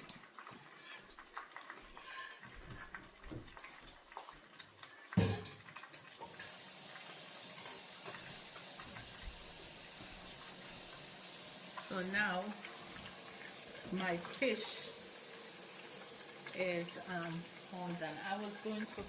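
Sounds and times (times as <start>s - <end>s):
water running from tap: 0.0s - 19.0s
cookware knocking and scraping: 5.2s - 5.6s.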